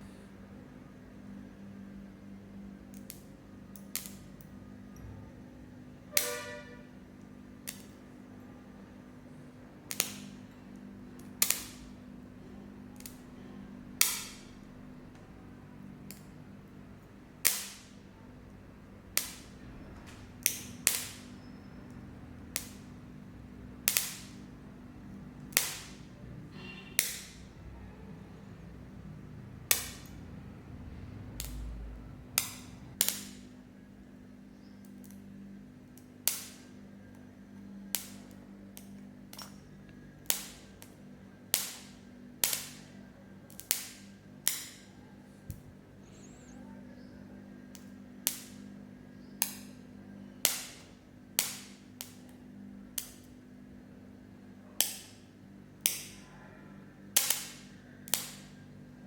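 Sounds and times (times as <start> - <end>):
low steady hum: 0.0 - 57.2
spot welder snapping cracks: 2.8 - 4.6, 6.1 - 6.8, 7.6 - 8.1, 9.8 - 12.2, 12.8 - 15.3, 16.0 - 16.4, 17.0 - 18.1, 19.0 - 23.0, 23.8 - 24.6, 25.3 - 27.6, 29.6 - 30.2, 31.3 - 33.6, 34.8 - 46.6, 47.6 - 53.5, 54.7 - 56.3, 57.2 - 58.8.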